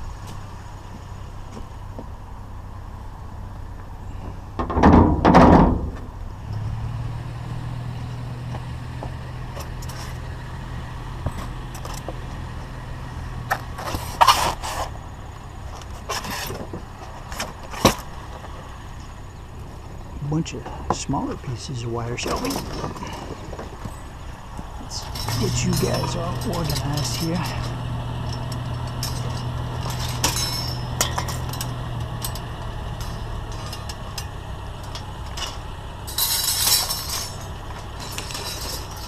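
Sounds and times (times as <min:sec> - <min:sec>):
vehicle engine idling: 0:00.0 - 0:39.0
loud rattling crash: 0:04.6 - 0:06.1, 0:24.9 - 0:39.0
sharp metal clanks: 0:24.9 - 0:39.0.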